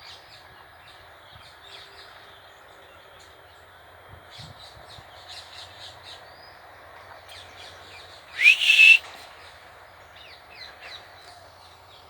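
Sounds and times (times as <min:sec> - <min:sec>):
short chirping calls: 0:08.4 - 0:09.0.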